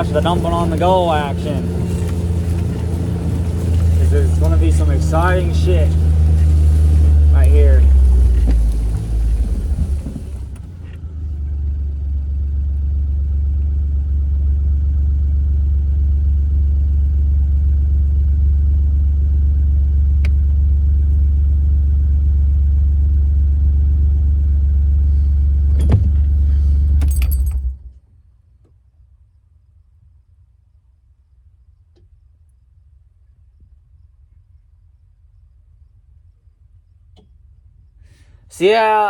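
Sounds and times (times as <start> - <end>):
utility vehicle engine running: 0.0 - 27.9
keys jingling: 27.0 - 27.7.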